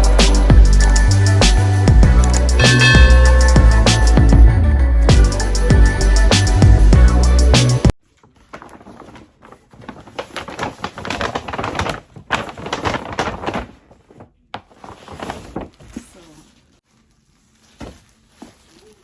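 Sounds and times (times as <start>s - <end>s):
packaging rustling and crinkling: 8.0s - 19.0s.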